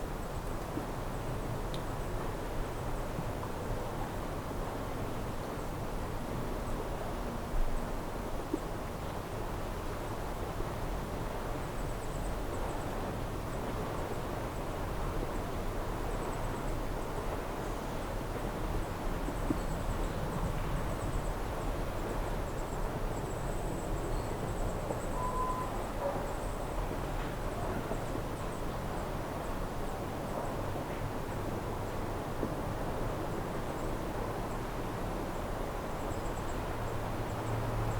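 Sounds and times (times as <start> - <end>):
faint high-pitched chirping: 25.0 - 26.3.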